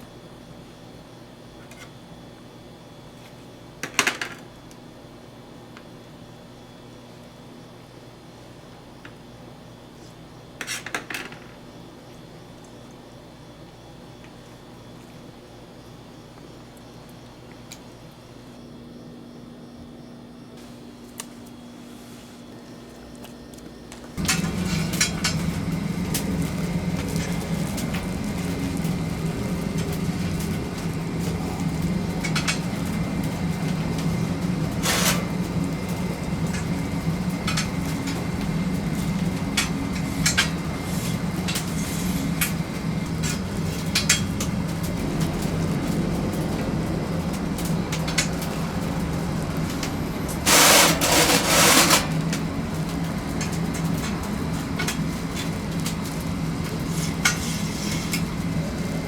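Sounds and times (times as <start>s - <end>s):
low machine hum: 14.0s - 59.0s
harsh noisy burst: 50.3s - 52.2s.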